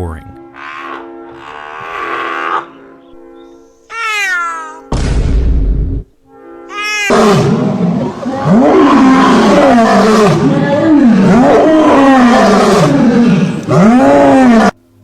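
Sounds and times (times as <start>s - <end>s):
big cat roaring: 6.8s - 14.8s.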